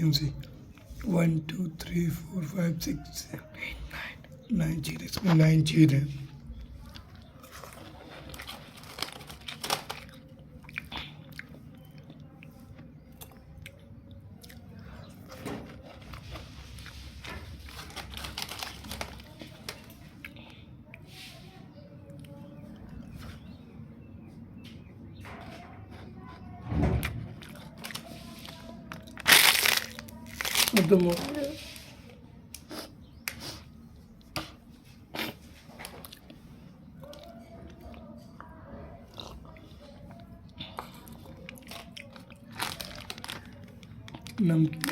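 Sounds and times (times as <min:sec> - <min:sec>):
person chewing crisp biscuits: 0:06.5 - 0:21.0, 0:27.4 - 0:31.2, 0:32.5 - 0:44.9.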